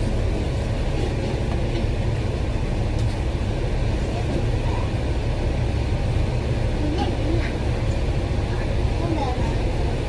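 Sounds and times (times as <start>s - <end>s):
bus engine rumble: 0.0s - 10.0s
road and cabin noise: 0.0s - 10.0s.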